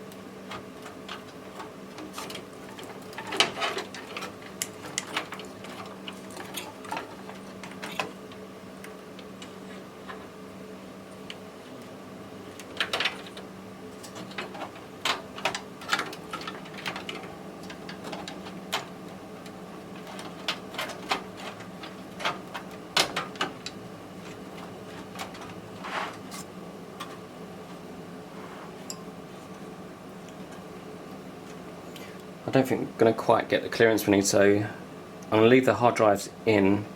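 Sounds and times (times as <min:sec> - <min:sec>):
steady low hum: 0:00.0 - 0:36.9
computer parts clicking and knocking: 0:00.5 - 0:08.2, 0:12.6 - 0:13.4, 0:14.0 - 0:18.9, 0:20.0 - 0:25.6.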